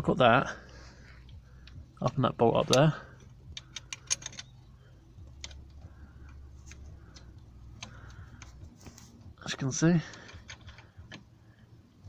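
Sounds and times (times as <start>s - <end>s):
low hum: 0.0s - 12.0s
spanner metallic clicks: 1.2s - 4.6s, 10.1s - 11.3s.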